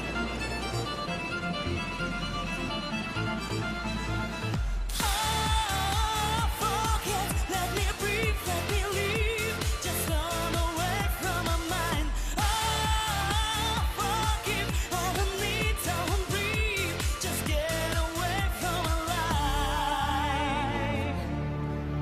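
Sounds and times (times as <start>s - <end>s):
person singing with vibrato: 4.6s - 21.7s.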